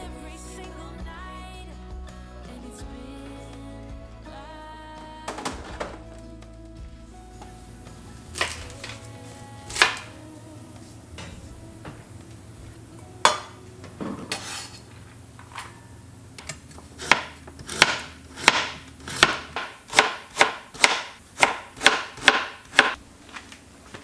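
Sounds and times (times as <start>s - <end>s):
knife chopping on wooden board: 8.3s - 9.0s, 9.7s - 10.2s, 17.0s - 23.0s.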